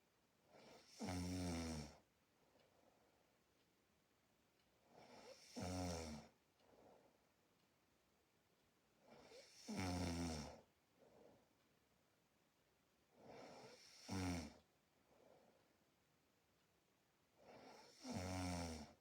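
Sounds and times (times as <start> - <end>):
person snoring: 0.6 - 2.0, 5.0 - 6.3, 9.2 - 10.7, 13.3 - 14.6, 17.5 - 19.0
faint breath: 6.6 - 7.3, 15.0 - 15.8.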